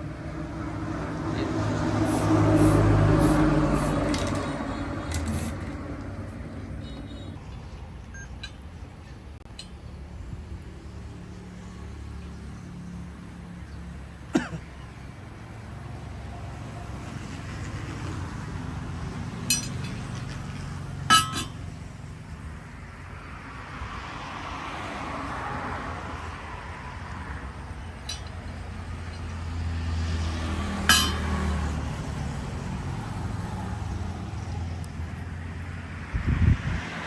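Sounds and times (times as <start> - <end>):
metal clinking on metal: 19.4 - 21.8, 27.9 - 29.8, 30.6 - 32.1.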